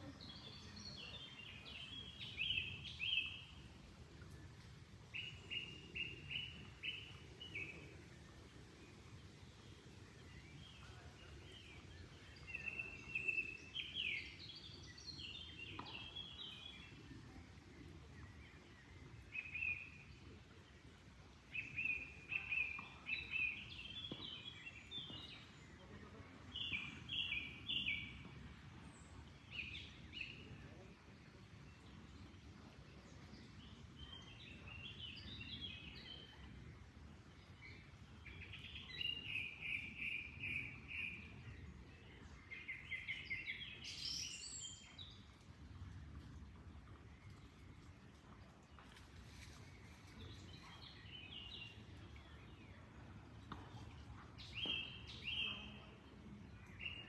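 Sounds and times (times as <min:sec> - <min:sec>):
songbirds chirping and trilling: 0:00.0 - 0:57.0.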